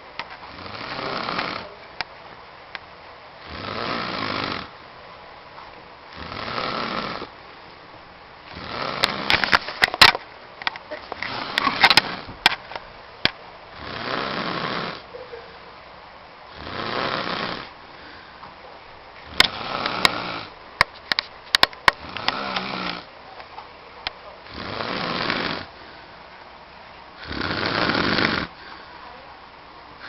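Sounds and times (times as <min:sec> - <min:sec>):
man snoring heavily: 0:00.5 - 0:01.8, 0:03.4 - 0:04.7, 0:06.1 - 0:07.3, 0:08.5 - 0:09.4, 0:11.3 - 0:12.3, 0:13.7 - 0:15.0, 0:16.5 - 0:17.7, 0:19.3 - 0:20.6, 0:22.0 - 0:23.1, 0:24.4 - 0:25.8, 0:27.2 - 0:28.6.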